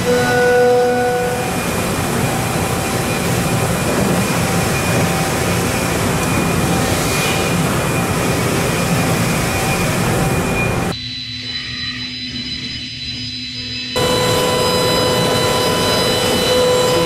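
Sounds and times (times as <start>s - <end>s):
faint high tones: 0.0s - 1.6s.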